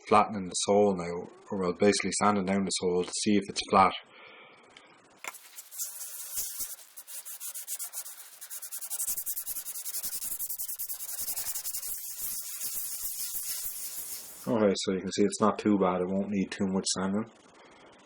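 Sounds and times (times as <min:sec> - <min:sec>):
metal rasping on sandpaper: 0:05.3 - 0:14.5.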